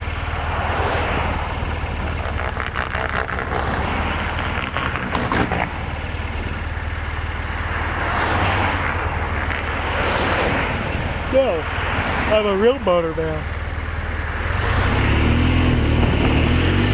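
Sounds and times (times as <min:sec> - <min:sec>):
motor vehicle engine running: 0:00.0 - 0:16.9.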